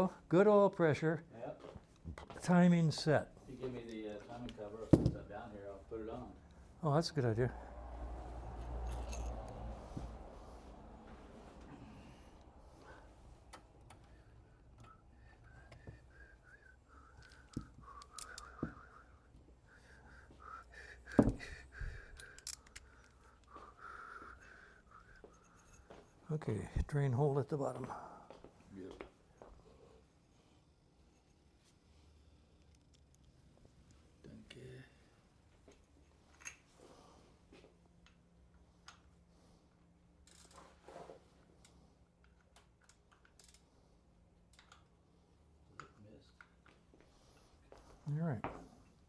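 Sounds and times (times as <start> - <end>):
faint clicks: 17.1 - 19.0.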